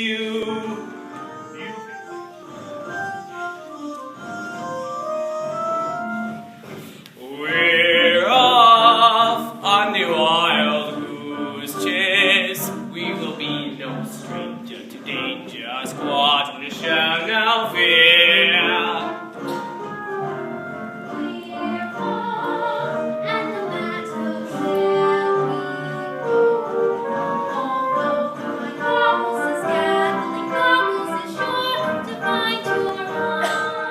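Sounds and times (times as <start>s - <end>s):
instrumental accompaniment: 0.0s - 33.9s
voices singing with vibrato: 7.2s - 19.7s, 20.7s - 33.9s.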